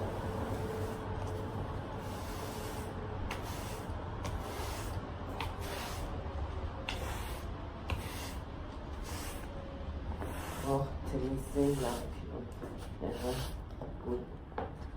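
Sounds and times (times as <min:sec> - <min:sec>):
rubbing or brushing strokes: 0:00.0 - 0:06.2, 0:06.9 - 0:09.5, 0:10.2 - 0:12.2
low steady hum: 0:00.0 - 0:14.9.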